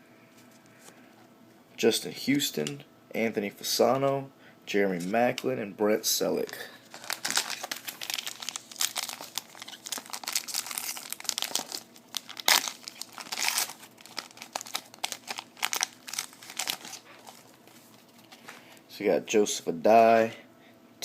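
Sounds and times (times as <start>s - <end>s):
wrapper crinkling and tearing: 6.4s - 18.4s.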